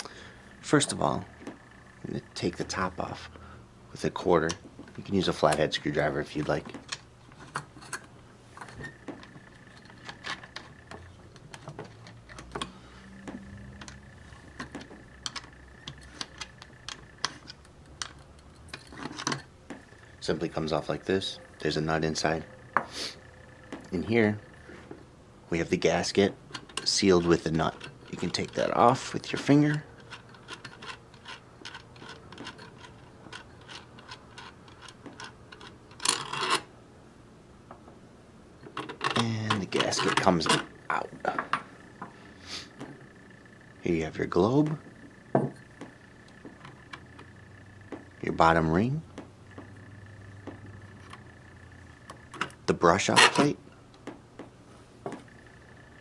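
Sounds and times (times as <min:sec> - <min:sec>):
coin clicking and scraping on metal: 0:13.5 - 0:19.5, 0:26.5 - 0:36.7.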